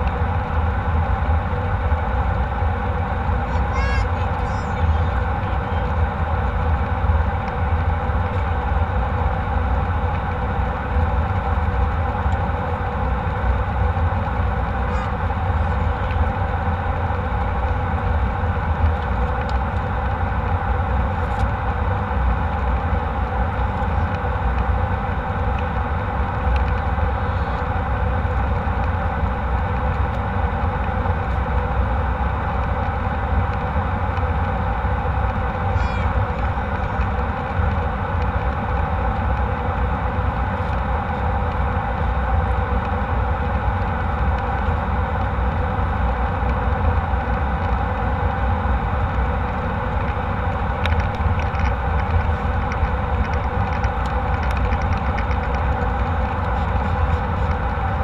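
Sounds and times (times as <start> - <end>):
jet engines droning: 0.0 - 58.0.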